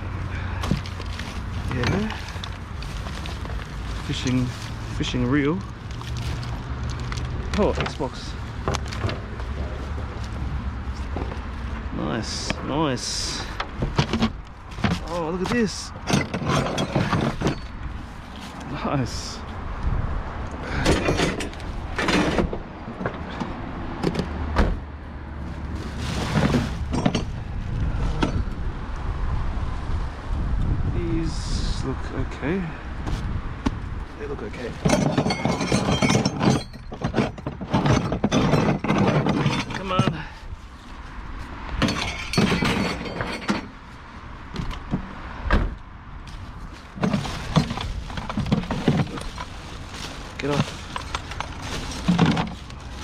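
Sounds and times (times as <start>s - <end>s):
hard objects clattering: 0.3s - 9.5s, 13.4s - 17.8s, 25.8s - 27.4s, 34.5s - 40.4s, 41.7s - 43.8s, 46.7s - 53.0s
junk knocking and rattling: 7.5s - 9.5s, 13.4s - 17.8s, 20.7s - 24.9s, 26.0s - 27.5s, 34.6s - 40.4s, 41.7s - 43.9s, 46.8s - 53.0s.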